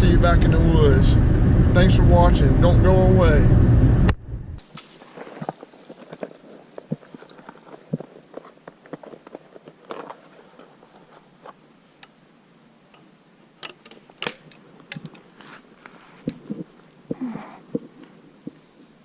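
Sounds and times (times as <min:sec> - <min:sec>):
clicks and rustles in forest litter: 0:04.6 - 0:11.7, 0:13.8 - 0:18.9
sharp crack: 0:13.6 - 0:15.2.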